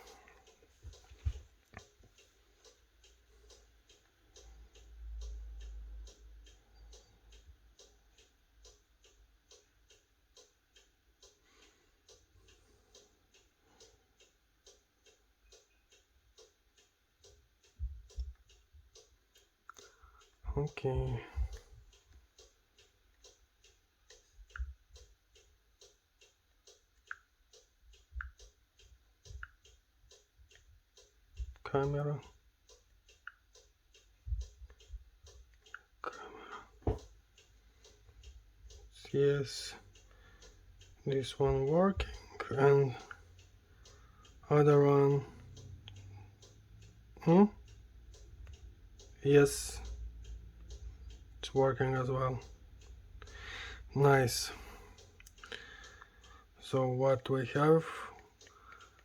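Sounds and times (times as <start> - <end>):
steady ticking: 0.0 - 59.0
soft low thumps: 17.8 - 18.9.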